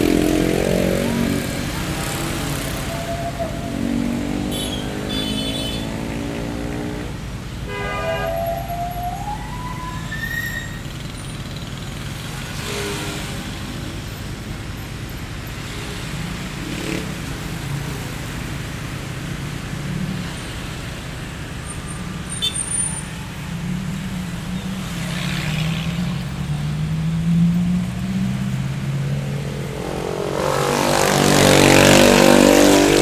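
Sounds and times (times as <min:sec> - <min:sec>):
low hum of engines: 0:00.0 - 0:07.6, 0:08.4 - 0:33.0
vehicles passing: 0:00.0 - 0:33.0
siren: 0:08.0 - 0:11.0.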